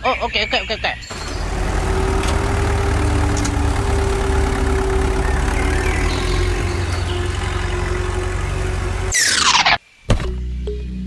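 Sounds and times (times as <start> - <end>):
engine idling: 1.1 - 9.5.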